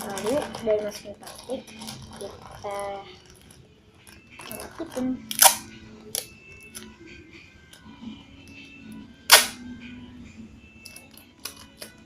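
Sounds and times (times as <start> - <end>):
plastic wrapper crinkle: 0.0 - 5.1
faint background music: 0.0 - 12.0.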